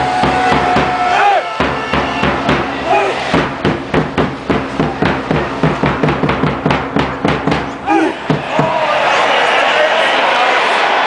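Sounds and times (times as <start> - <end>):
crowd chanting: 0.0 - 3.4, 7.8 - 11.0
drum beat: 0.0 - 8.9.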